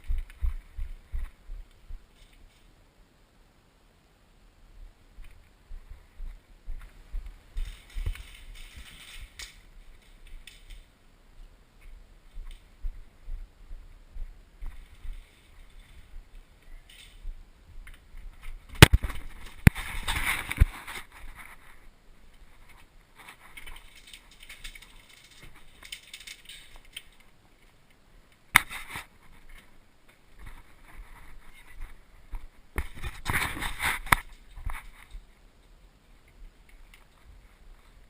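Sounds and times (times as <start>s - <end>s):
handling rustle: 5.2s - 13.0s, 14.2s - 38.0s
sharp cracks: 7.5s - 10.9s, 14.6s - 21.1s, 23.4s - 27.4s, 28.3s - 29.1s.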